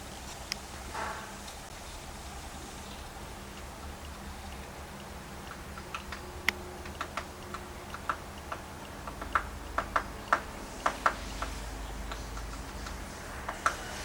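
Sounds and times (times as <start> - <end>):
bird tick notes: 2.7 - 13.8.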